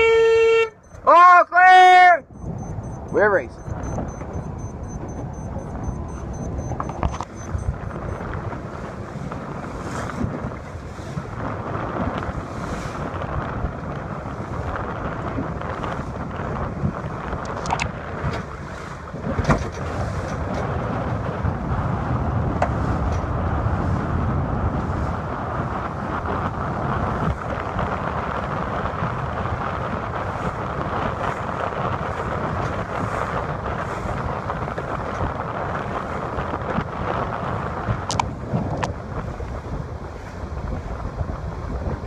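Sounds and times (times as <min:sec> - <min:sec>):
wind buffeting microphone: 0:01.7 - 0:42.0
sharp clicks: 0:02.4 - 0:08.1
water washing against boat: 0:02.4 - 0:42.0.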